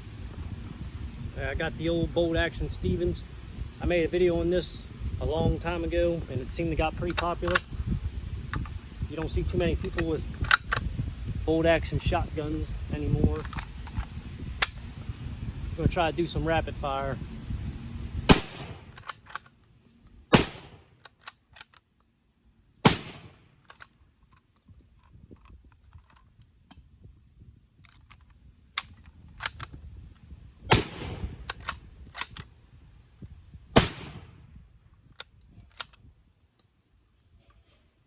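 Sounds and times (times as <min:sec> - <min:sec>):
shotgun shots: 0:18.3 - 0:19.0, 0:20.3 - 0:20.9, 0:22.8 - 0:23.5, 0:30.7 - 0:31.5, 0:33.8 - 0:34.4.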